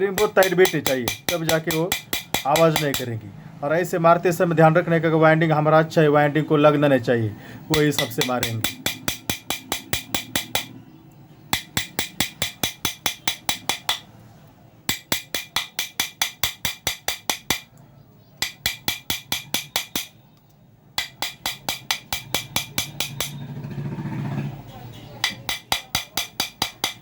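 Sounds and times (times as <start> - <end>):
rapid metal-on-metal strikes: 0.0 - 3.2, 7.7 - 10.8, 11.5 - 14.1, 14.9 - 17.8, 18.4 - 20.2, 21.0 - 27.0.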